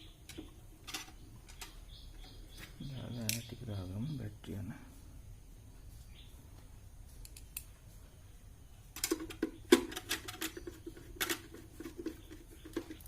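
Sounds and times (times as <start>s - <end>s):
small parts clicking and rattling: 0.3s - 1.8s, 9.0s - 13.0s.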